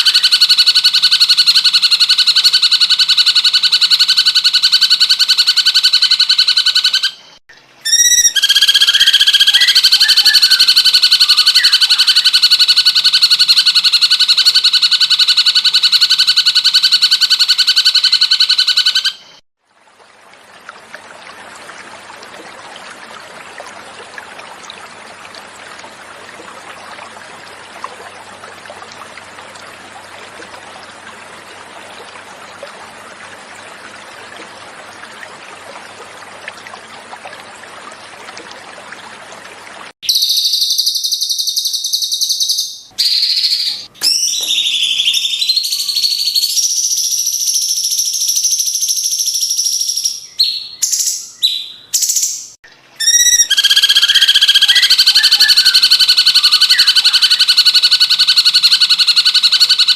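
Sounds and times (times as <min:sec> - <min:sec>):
flowing water: 0:00.0 - 0:40.0, 0:42.9 - 0:59.9
bird trilling: 0:07.8 - 0:16.0, 0:53.0 - 0:59.9.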